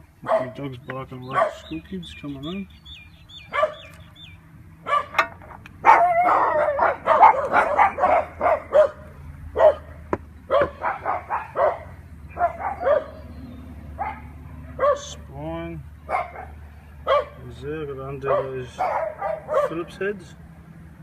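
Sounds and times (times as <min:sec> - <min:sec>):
dog barking: 0:00.2 - 0:00.6, 0:01.3 - 0:01.7, 0:03.5 - 0:03.9, 0:04.8 - 0:05.2, 0:05.8 - 0:13.2, 0:14.0 - 0:15.2, 0:16.1 - 0:17.4, 0:18.2 - 0:19.9.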